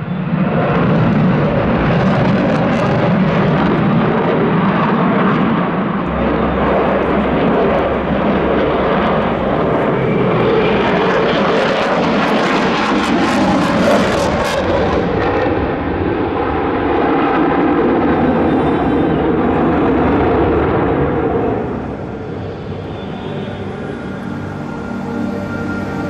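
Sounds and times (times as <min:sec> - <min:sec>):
jet engine roar: 0:00.0 - 0:26.0.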